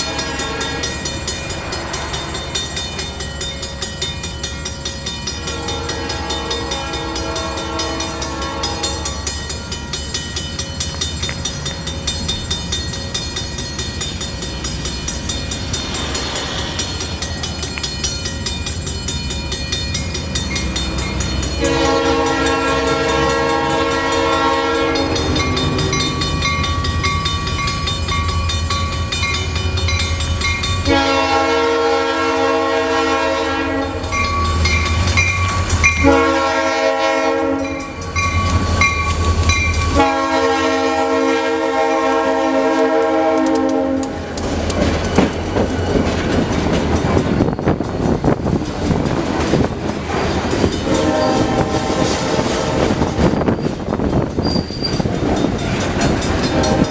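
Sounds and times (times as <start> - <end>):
locomotive horn blasts: 0.0 - 0.9, 5.4 - 9.2, 21.6 - 26.0, 30.9 - 34.2, 36.0 - 37.9, 39.9 - 44.2, 50.8 - 53.0, 56.5 - 56.9
train wheels clacking over rail joints: 43.2 - 56.9.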